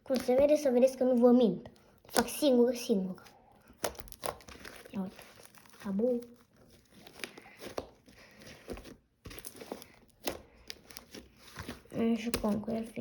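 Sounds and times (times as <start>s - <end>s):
slime crackling and popping: 3.6s - 13.0s.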